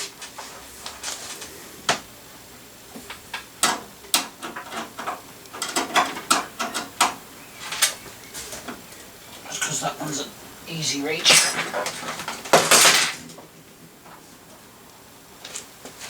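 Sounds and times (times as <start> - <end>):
plastic and metal parts clattering: 3.6 - 8.8, 11.3 - 13.4.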